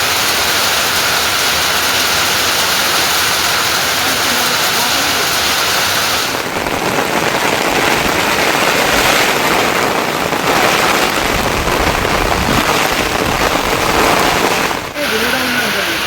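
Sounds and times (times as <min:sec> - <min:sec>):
heavy rain pouring: 0:00.0 - 0:16.0.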